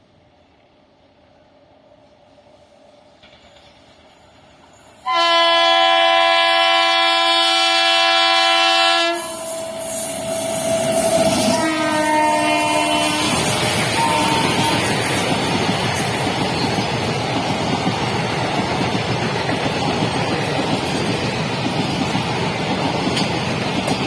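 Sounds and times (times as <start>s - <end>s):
train wheels rattling on rails: 0.0s - 24.0s
locomotive horn blast: 5.0s - 15.1s.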